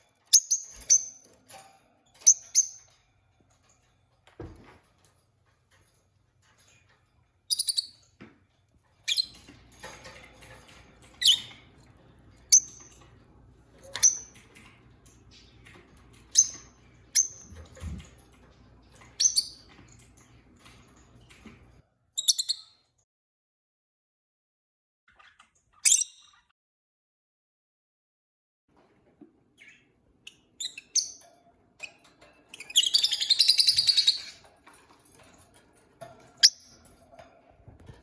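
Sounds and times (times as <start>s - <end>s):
lovebirds chirping: 32.6s - 34.4s.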